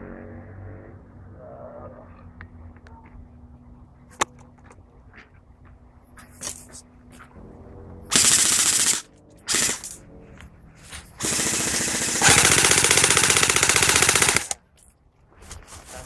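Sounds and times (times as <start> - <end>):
airsoft guns firing bursts: 8.1 - 10.0, 11.2 - 14.6.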